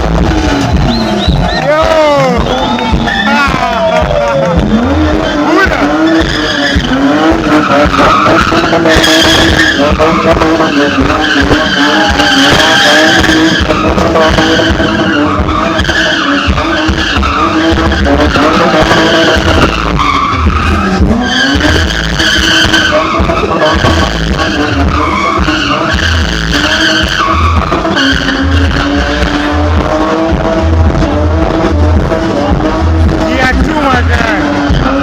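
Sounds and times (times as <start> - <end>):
car engine revving high: 0.0 - 35.0
tyres skidding on pavement: 0.0 - 35.0.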